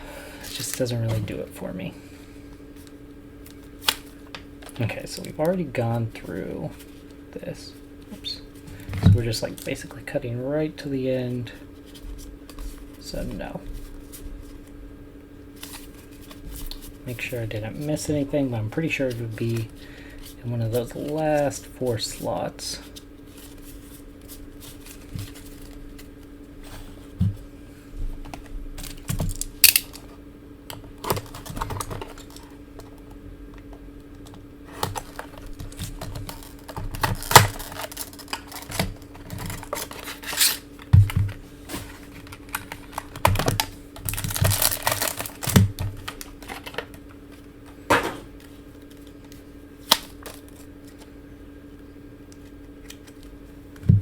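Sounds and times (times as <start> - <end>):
steady low hum: 0.0 - 54.0
trading cards clicking and rustling: 15.6 - 26.3, 28.2 - 51.1.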